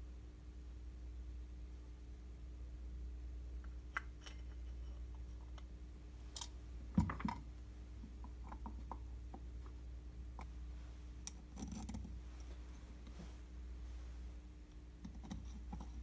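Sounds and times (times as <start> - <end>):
steady low hum: 0.0 - 16.0
metal parts clicking and tapping: 6.3 - 7.4, 11.2 - 12.1.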